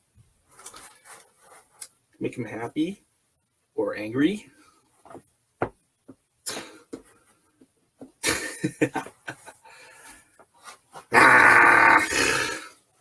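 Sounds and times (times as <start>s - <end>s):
breathy vocal outburst: 11.1s - 12.8s.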